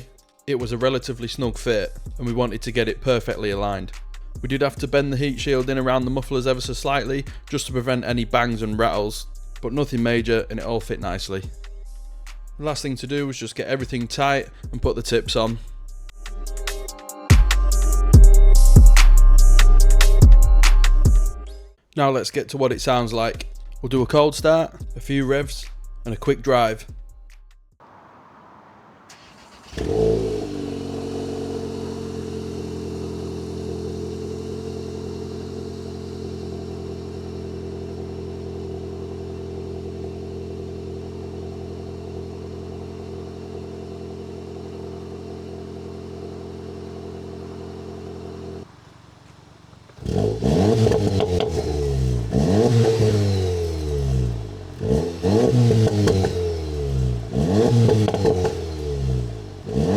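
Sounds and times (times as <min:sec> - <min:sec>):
car engine starting and idling: 0:00.0 - 0:13.1, 0:27.8 - 0:59.9
car engine revving: 0:27.8 - 0:59.9.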